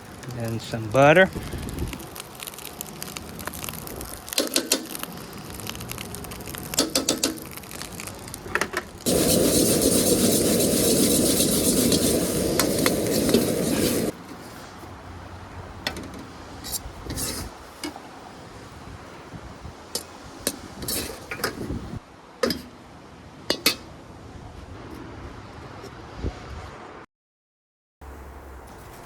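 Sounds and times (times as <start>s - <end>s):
loud steady rushing noise: 9.1s - 14.2s
spatula scraping a wok: 9.1s - 14.9s, 16.6s - 17.9s.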